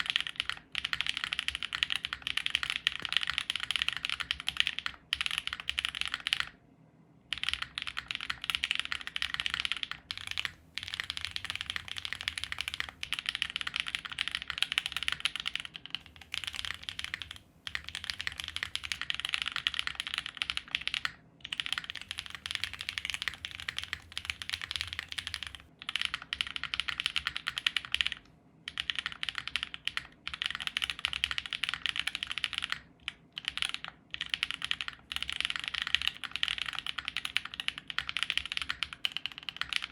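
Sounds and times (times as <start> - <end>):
fast typing on mechanical keyboard: 0.0 - 6.6, 7.3 - 39.9.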